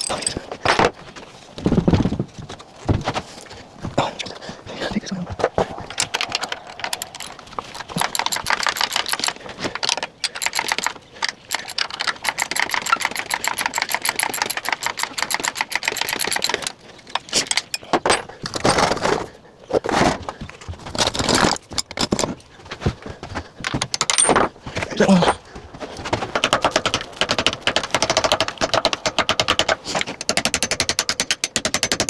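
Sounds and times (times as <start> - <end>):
tool clicking and rattling on bolt: 0.0 - 0.9, 5.8 - 19.1, 23.6 - 32.0.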